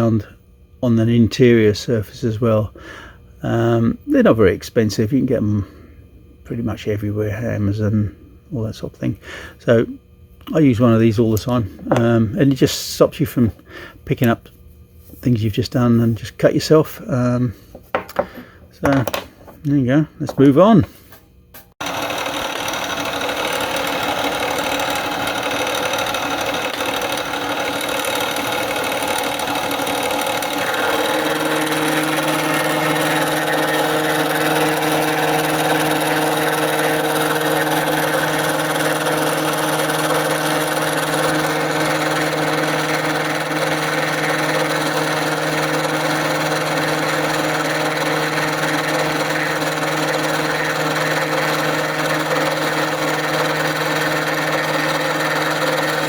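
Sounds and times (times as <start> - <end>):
low hum with overtones: 0.0 - 21.7
machine tool whirring: 21.8 - 56.0.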